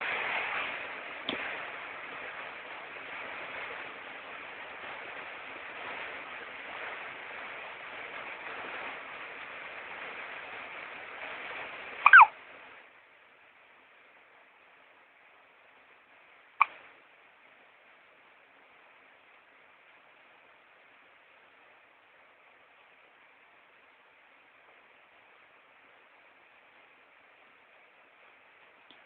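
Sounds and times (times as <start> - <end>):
steady background hiss: 0.0 - 29.0
baby hiccup: 12.0 - 12.3.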